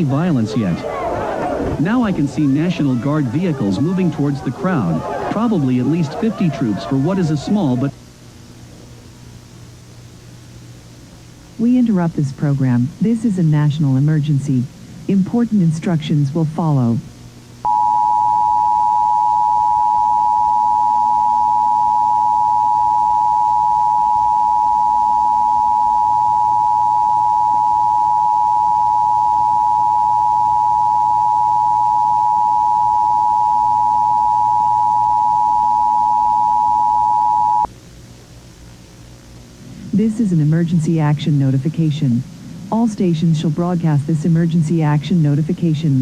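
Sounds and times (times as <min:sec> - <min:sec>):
steady two-tone alert signal: 0:17.7 - 0:37.7.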